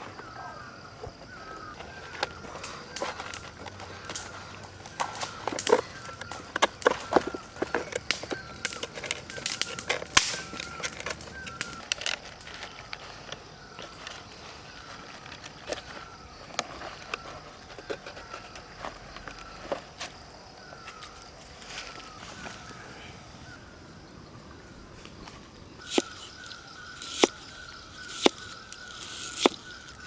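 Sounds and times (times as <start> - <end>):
sharp clicks and knocks: 25.8 - 30.0.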